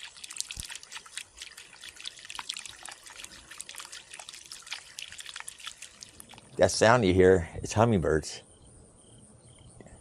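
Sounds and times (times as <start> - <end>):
garden fountain trickling: 0.0 - 7.5.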